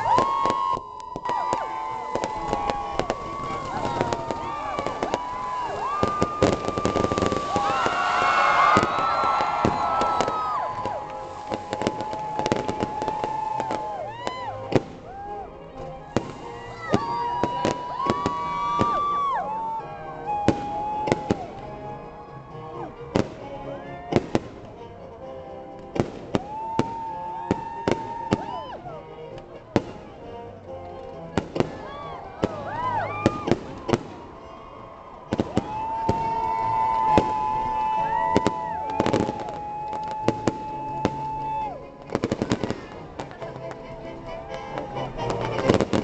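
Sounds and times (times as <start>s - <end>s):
fireworks bangs: 0.0s - 15.2s, 16.1s - 19.2s, 20.3s - 21.7s, 25.9s - 28.6s, 31.3s - 34.4s, 35.3s - 43.8s, 44.8s - 46.0s.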